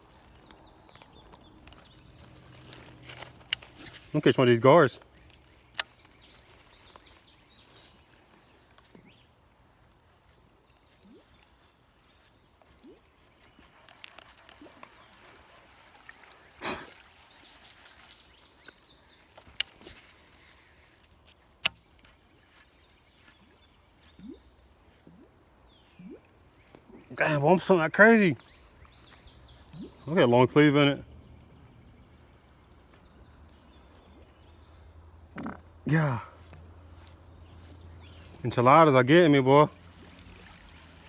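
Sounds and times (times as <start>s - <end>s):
birds calling: 0.0s - 41.0s
sharp clicks: 1.0s - 7.2s.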